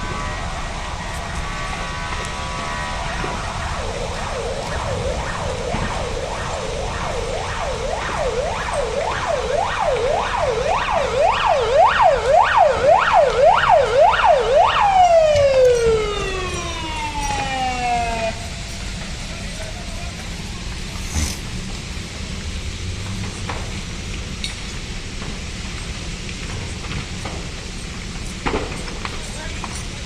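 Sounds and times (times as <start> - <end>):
emergency siren yelping: 0.0 - 20.8.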